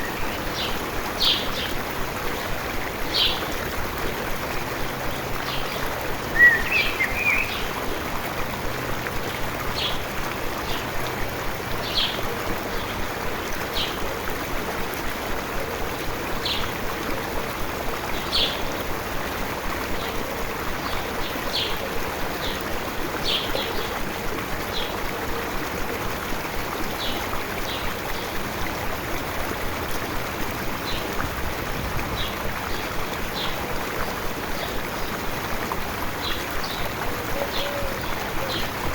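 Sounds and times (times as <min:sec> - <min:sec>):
small stream running: 0:00.0 - 0:38.9
bird call: 0:06.4 - 0:07.6.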